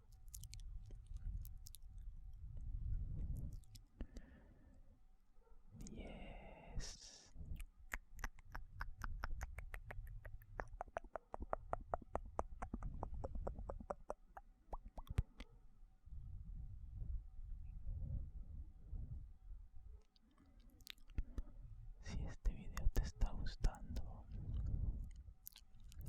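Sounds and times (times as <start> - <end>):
wet tongue and lip clicks: 0.0 - 4.3, 6.8 - 15.6, 20.0 - 26.0.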